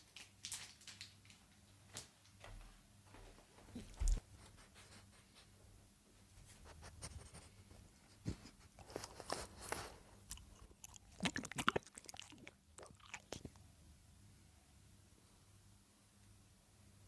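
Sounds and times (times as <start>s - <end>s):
dog chewing food crunchily: 8.8s - 13.6s.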